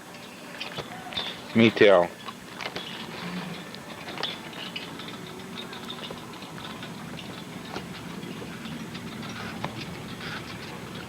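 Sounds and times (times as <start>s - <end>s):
cable car hum and rattle: 2.4s - 11.0s.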